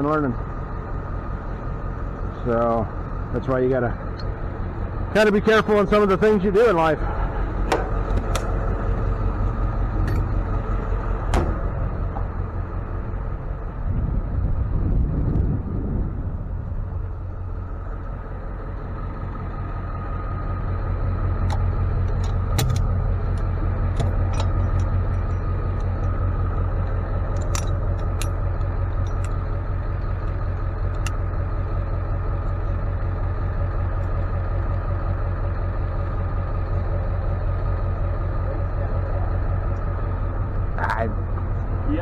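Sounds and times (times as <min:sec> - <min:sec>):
truck engine and road rumble: 0:00.0 - 0:42.0
sharp clicks and rattles: 0:07.6 - 0:09.2, 0:09.8 - 0:12.6, 0:21.2 - 0:31.6.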